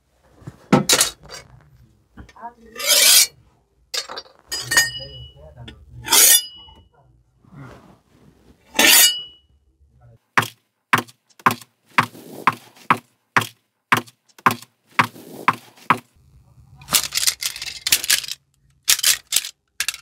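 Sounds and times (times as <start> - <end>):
sharp knocks: 10.4 - 16.1.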